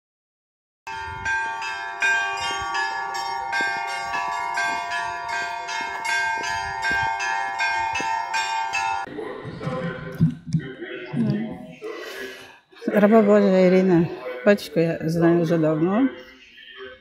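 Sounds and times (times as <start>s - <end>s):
church bells ringing: 0.9s - 9.1s.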